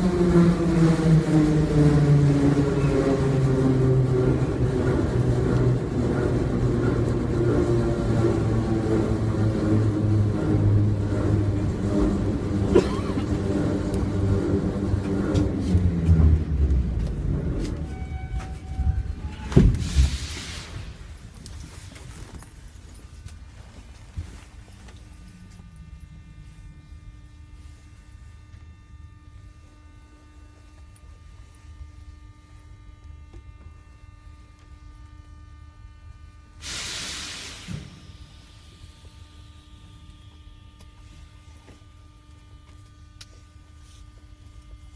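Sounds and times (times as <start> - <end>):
train rumbling on rails: 0.0 - 30.8, 31.6 - 40.7
loud hiss: 19.5 - 21.2, 36.6 - 38.5.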